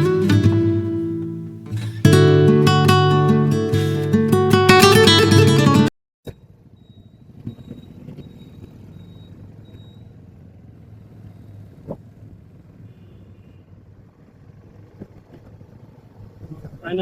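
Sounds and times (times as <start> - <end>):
vehicle engines running: 0.0 - 17.0
faint high-pitched beep: 6.7 - 10.1.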